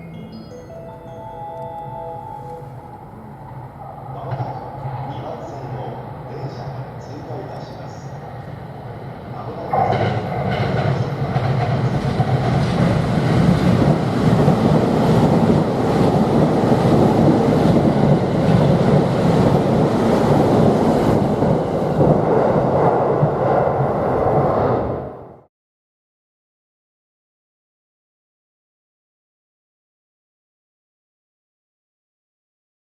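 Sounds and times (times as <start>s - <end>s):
train wheels rumbling: 2.2s - 25.3s.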